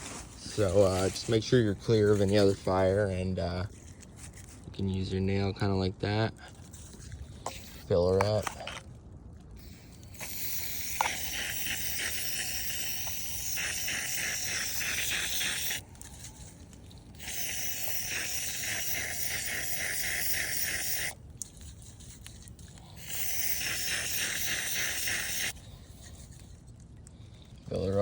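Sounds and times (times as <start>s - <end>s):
gas hissing from refill can: 7.4s - 8.7s, 9.6s - 16.3s, 17.1s - 21.2s, 22.0s - 25.6s.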